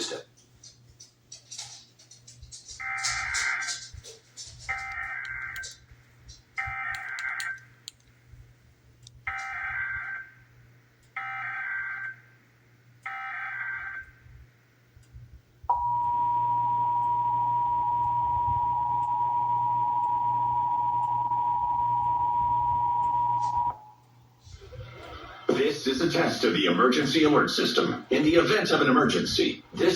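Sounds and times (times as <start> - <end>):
steady attention signal tone: 15.7 - 24.1.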